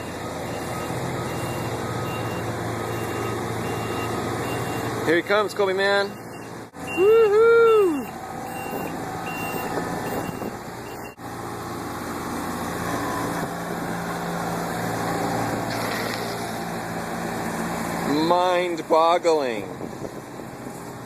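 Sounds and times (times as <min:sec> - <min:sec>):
construction vehicle engine: 0:00.0 - 0:21.0.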